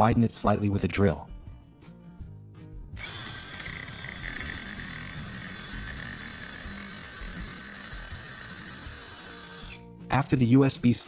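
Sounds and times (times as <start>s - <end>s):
electric drill boring into plastic: 3.0s - 9.8s.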